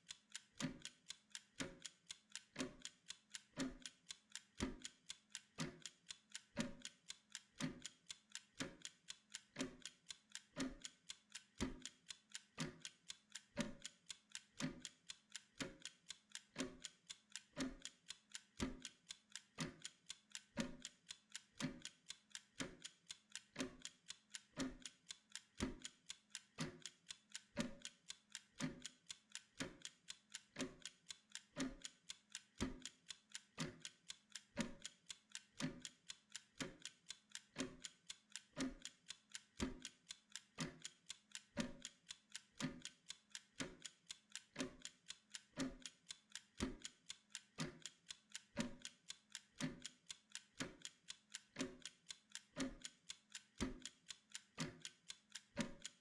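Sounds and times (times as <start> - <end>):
kitchen timer ticking: 0.0 - 56.0.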